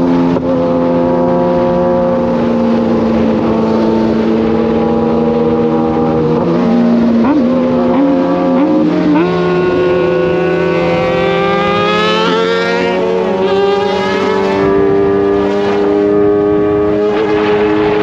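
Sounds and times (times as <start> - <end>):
lower engine tone: 0.0 - 18.0.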